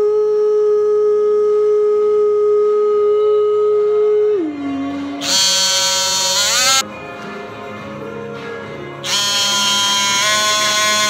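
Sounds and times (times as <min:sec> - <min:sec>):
song with sung long held notes: 0:02.9 - 0:11.0.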